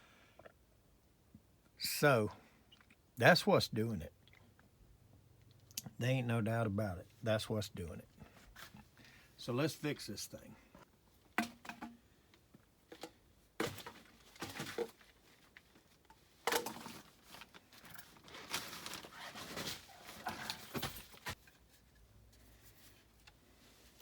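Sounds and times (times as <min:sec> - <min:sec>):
tools and parts clanking: 0:11.4 - 0:12.0.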